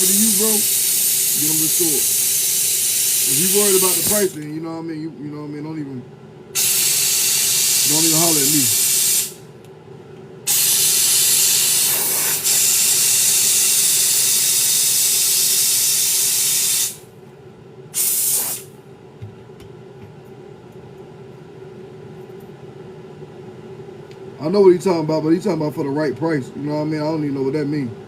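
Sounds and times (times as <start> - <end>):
pressurised spray hissing: 0.0 - 4.4, 6.6 - 9.4, 10.5 - 17.1, 18.0 - 18.7.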